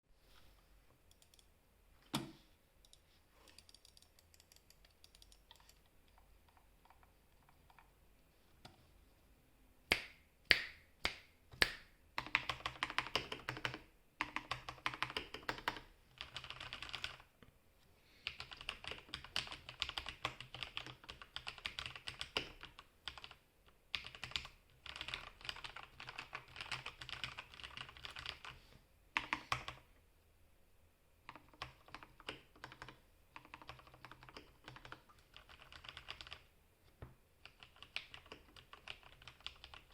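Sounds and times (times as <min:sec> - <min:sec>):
typing on mechanical keyboard: 0:02.9 - 0:07.9, 0:12.2 - 0:17.3, 0:18.2 - 0:28.6, 0:29.2 - 0:29.8, 0:31.3 - 0:36.5, 0:37.4 - 0:39.9.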